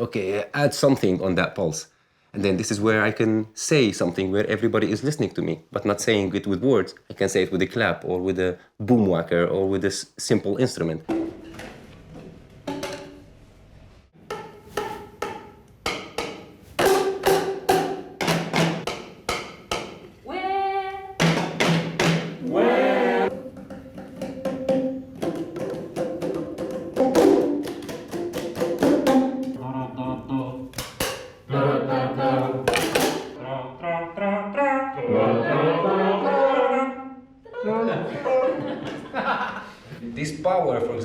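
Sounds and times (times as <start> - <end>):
hand claps and percussion: 14.3 - 20.1, 21.2 - 22.4, 23.3 - 29.6, 30.7 - 31.5, 32.7 - 33.4
people singing and calling: 22.4 - 23.4, 29.6 - 30.7, 31.5 - 32.7, 33.4 - 37.3.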